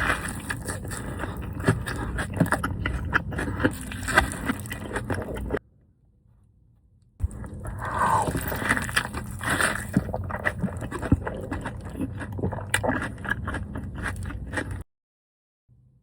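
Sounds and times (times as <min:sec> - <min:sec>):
food crackling and rustling: 0:07.2 - 0:14.8.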